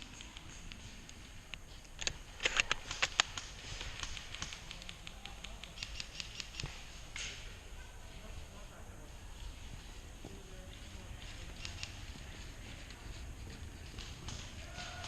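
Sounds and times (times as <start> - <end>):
airsoft gunfire clicks and pops: 1.5 - 7.4.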